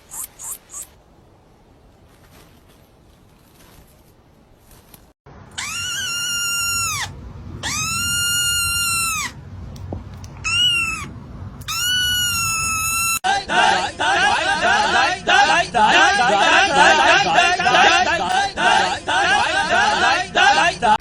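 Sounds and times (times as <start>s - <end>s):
animal high-pitched cries: 0.0s - 1.0s, 5.5s - 9.4s, 10.4s - 13.2s.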